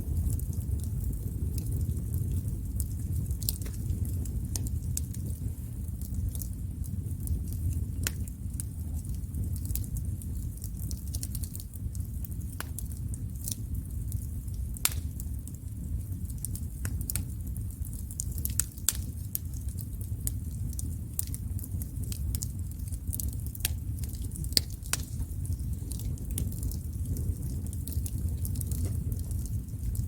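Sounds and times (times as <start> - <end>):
low fire rumble: 0.0 - 30.0
wood fire crackling and popping: 0.0 - 30.0.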